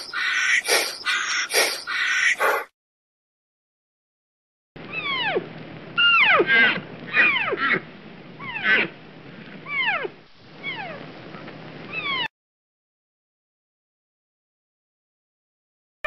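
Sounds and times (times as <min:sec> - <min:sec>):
animal crying: 0:00.0 - 0:02.7, 0:04.9 - 0:05.4, 0:06.0 - 0:09.0, 0:09.7 - 0:11.0, 0:11.9 - 0:12.3
harsh rattling animal calls: 0:00.0 - 0:02.7, 0:06.0 - 0:09.0.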